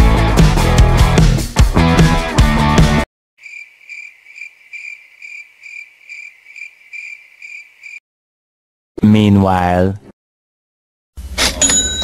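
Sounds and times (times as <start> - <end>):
rock music: 0.0 - 3.0
cricket chirping: 3.4 - 8.0.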